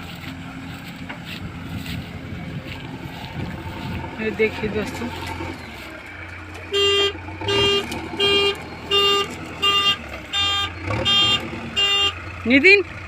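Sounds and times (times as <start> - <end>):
low engine rumble: 0.0 - 13.0
vehicle warning beeps: 6.6 - 12.8.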